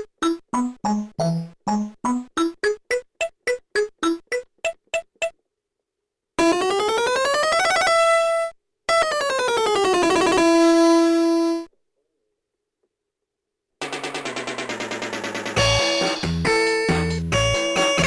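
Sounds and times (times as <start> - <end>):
toy keyboard electronic notes: 0.0 - 5.4.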